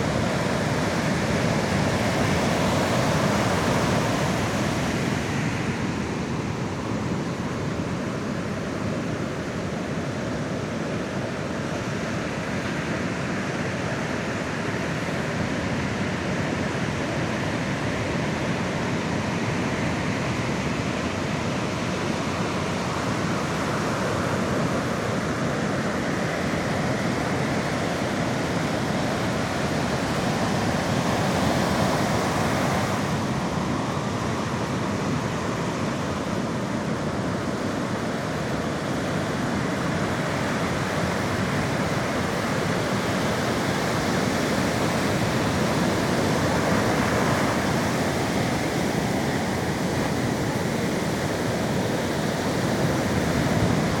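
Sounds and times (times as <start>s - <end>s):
surf breaking on shore: 19.4s - 54.0s.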